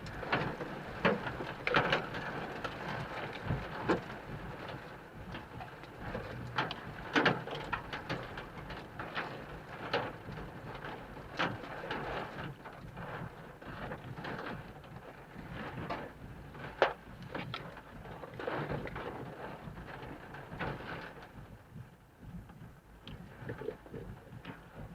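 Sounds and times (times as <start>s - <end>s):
rain hissing on a vehicle: 0.0s - 24.9s
raindrops tapping on a vehicle: 0.0s - 24.9s.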